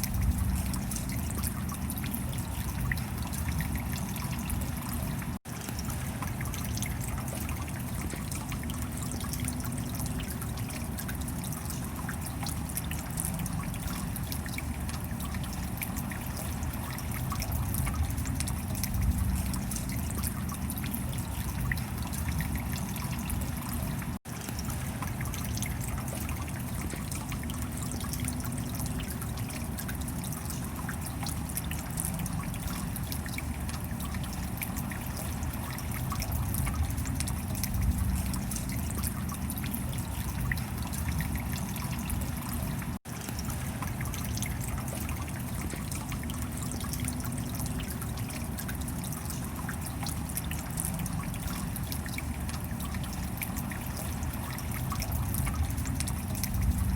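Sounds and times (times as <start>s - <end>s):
steady rain: 0.0s - 56.9s.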